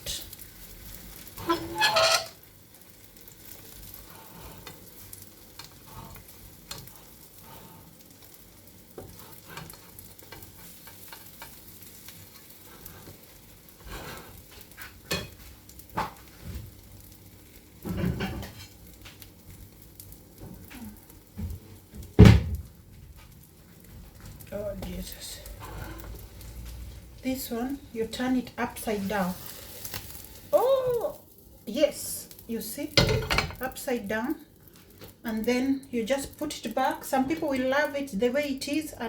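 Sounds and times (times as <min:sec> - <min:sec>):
utensil knocking and scraping pan: 0:01.5 - 0:02.3
omelette sizzling faintly: 0:22.8 - 0:33.0.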